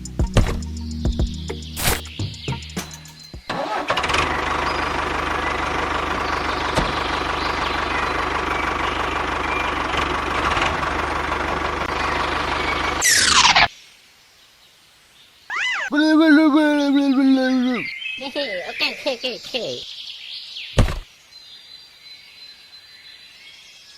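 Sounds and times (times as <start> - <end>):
small engine running: 3.5 - 13.6.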